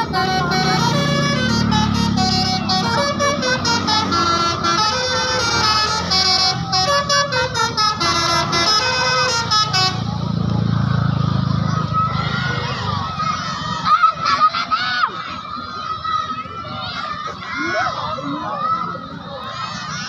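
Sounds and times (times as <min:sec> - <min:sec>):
musical bus horn tune: 0:00.0 - 0:10.8.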